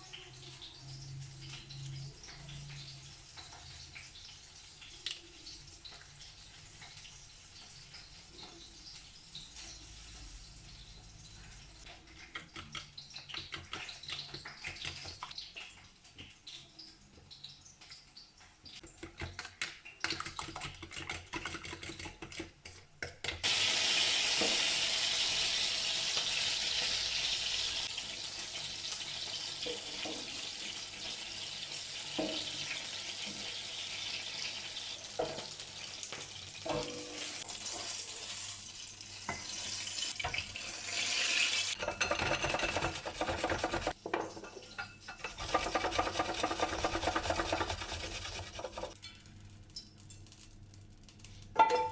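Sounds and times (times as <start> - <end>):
dishes clinking: 41.8 - 42.8, 51.6 - 51.9.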